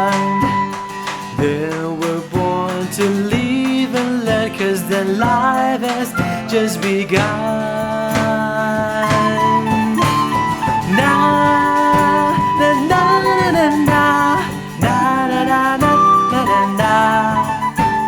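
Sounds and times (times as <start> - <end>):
acoustic guitar: 0.0 - 18.0
bending held melody notes: 6.5 - 18.0.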